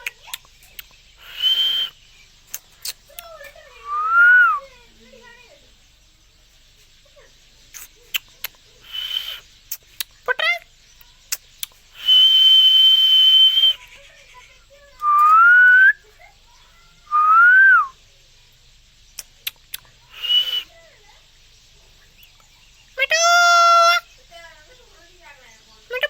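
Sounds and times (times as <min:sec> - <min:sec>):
sharp clicks: 0:00.0 - 0:01.0, 0:02.5 - 0:03.4, 0:07.7 - 0:10.4, 0:11.0 - 0:12.2, 0:15.0 - 0:15.4, 0:19.1 - 0:19.9
parrot whistling: 0:01.2 - 0:02.0, 0:03.8 - 0:04.7, 0:08.8 - 0:09.4, 0:12.0 - 0:13.8, 0:17.1 - 0:18.0, 0:20.1 - 0:20.8.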